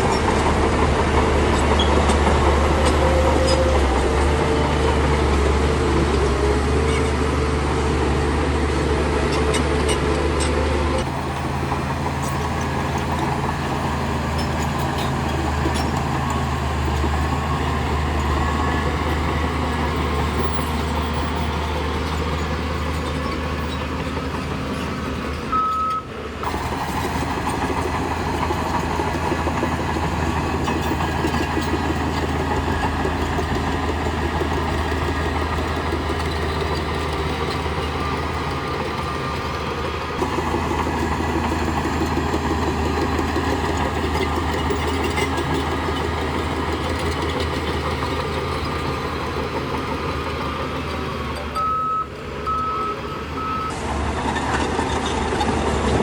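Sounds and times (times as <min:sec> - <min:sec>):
heavy diesel machinery running: 0:00.0 - 0:56.0
reversing alarm beeping: 0:25.5 - 0:26.1, 0:51.6 - 0:53.8.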